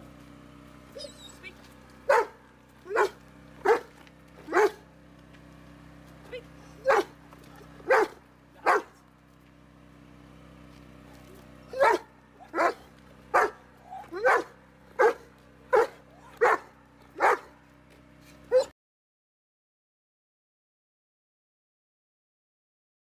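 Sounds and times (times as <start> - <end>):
steady low hum: 0.0 - 18.7
dog barking: 2.1 - 4.9, 6.8 - 7.2, 7.8 - 9.0, 11.7 - 17.6, 18.5 - 18.7.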